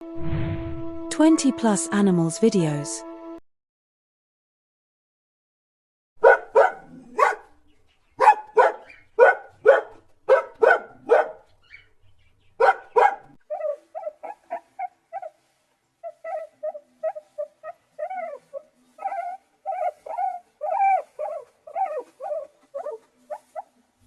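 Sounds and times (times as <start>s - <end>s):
dog yipping and whining: 6.2s - 7.5s, 8.2s - 12.0s, 12.6s - 23.8s
dog barking: 6.2s - 7.6s, 8.2s - 11.5s, 12.6s - 14.4s.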